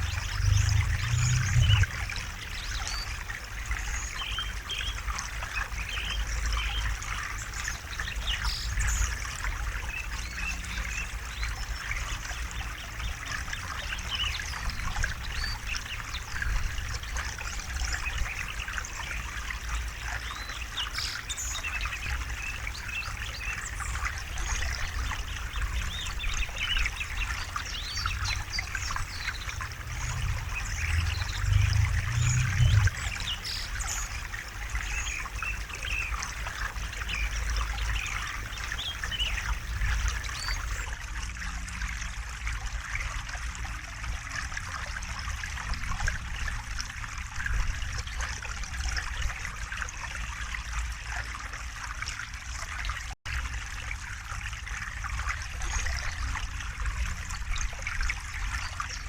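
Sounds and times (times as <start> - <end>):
birds chirping: 0.0 - 2.0, 22.4 - 40.8
low rumble in water: 0.0 - 59.0
river babbling over stones: 10.8 - 40.9.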